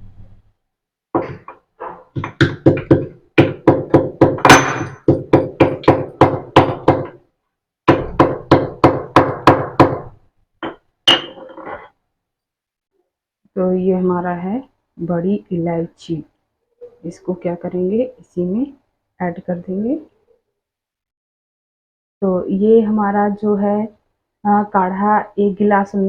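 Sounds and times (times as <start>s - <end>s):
pestle pounding in a mortar: 1.2s - 7.2s, 7.9s - 11.5s.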